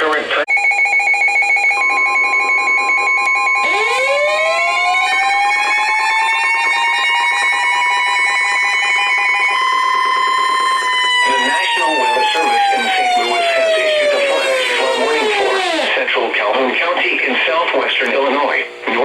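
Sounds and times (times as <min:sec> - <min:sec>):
fast-pulsing alarm beeps: 0:00.5 - 0:16.0
siren winding up: 0:00.5 - 0:16.0
steady high alert tone: 0:00.5 - 0:16.0.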